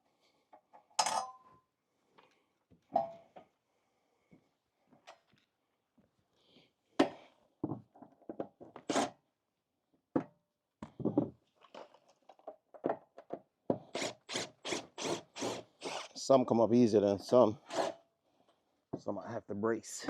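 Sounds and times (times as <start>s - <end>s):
wooden knocks and thunks: 7.6s - 8.5s, 10.2s - 11.4s.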